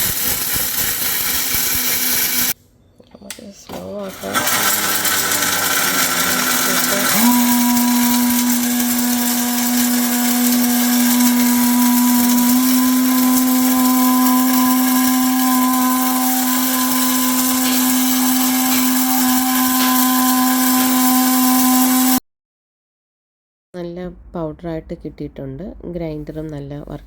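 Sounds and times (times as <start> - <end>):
mixer grinder motor whining: 0.0 - 2.6, 3.8 - 22.2
pepper grinding gritty noise: 0.0 - 2.6, 4.0 - 22.2.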